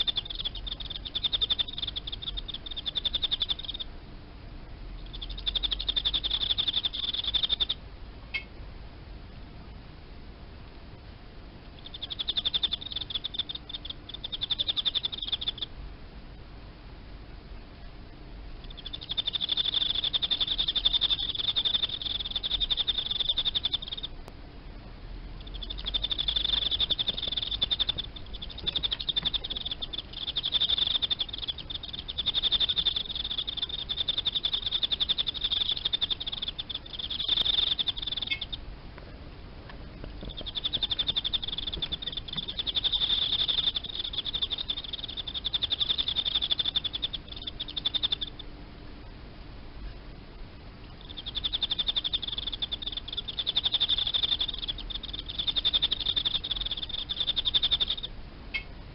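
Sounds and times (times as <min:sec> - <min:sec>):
cricket trilling: 0:00.0 - 0:03.9, 0:04.9 - 0:08.5, 0:11.6 - 0:15.7, 0:18.6 - 0:24.2, 0:25.4 - 0:38.7, 0:40.0 - 0:48.6, 0:50.8 - 0:58.7.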